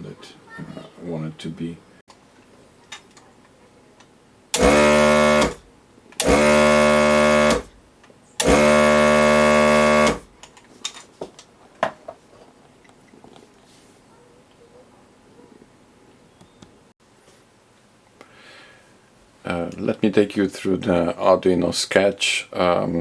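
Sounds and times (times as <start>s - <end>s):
vacuum pump buzzing: 4.5s - 7.8s, 8.4s - 10.4s.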